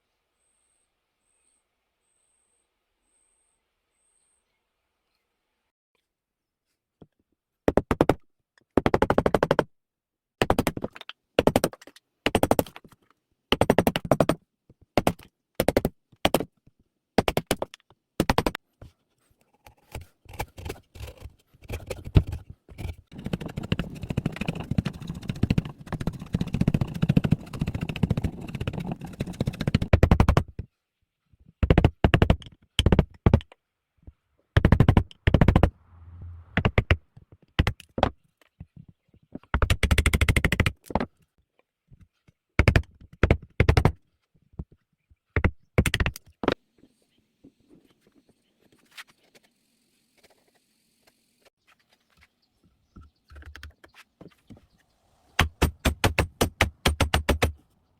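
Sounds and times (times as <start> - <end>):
hand tool scraping wood: 18.8 - 29.9.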